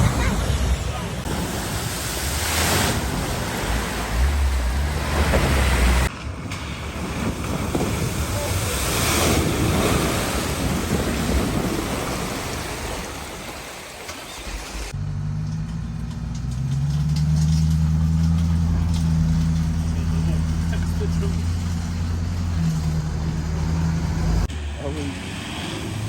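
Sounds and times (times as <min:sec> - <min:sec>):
water surging and splashing: 0:00.0 - 0:15.0
wind buffeting microphone: 0:00.0 - 0:15.0.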